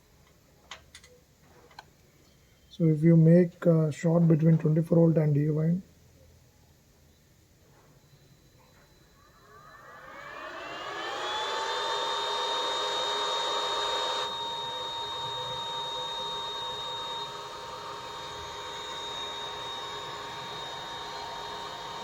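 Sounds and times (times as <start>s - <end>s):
electric motor whine: 8.8s - 22.0s.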